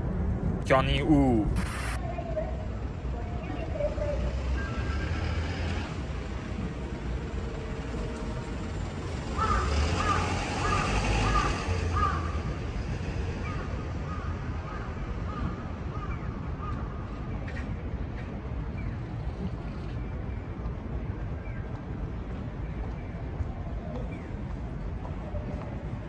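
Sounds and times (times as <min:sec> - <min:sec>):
steady low rumble: 0:00.0 - 0:17.4.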